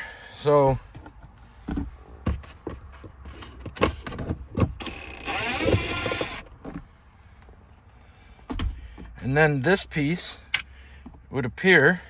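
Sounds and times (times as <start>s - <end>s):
screw gun motor whining: 4.8s - 6.6s.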